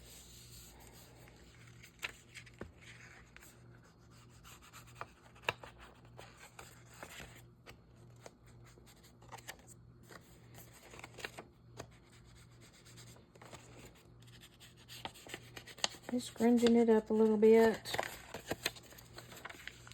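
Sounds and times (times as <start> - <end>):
low steady hum: 0.0 - 19.9
paper rubbing and rustling: 8.2 - 19.9.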